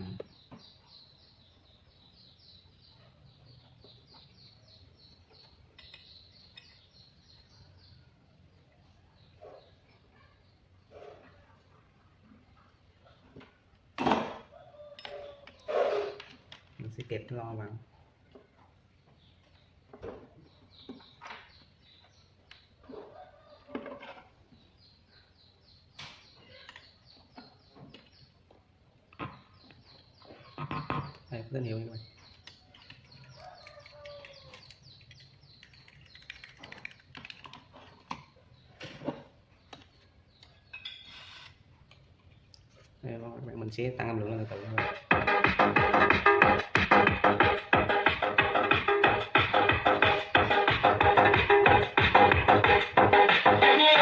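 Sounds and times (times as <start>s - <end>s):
bird chirping: 0.0s - 11.4s, 19.0s - 23.6s, 24.4s - 41.6s.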